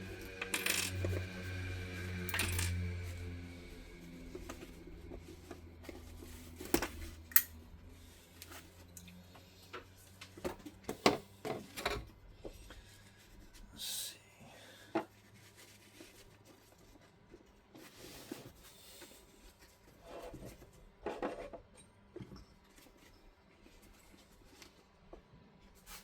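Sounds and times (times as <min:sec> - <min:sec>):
tools clicking and tapping: 0:00.3 - 0:01.3, 0:02.2 - 0:02.8.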